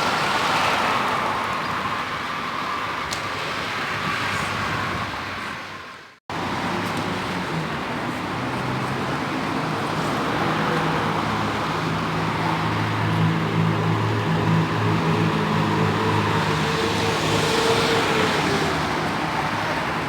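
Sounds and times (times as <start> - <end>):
road traffic noise: 0.0 - 20.0.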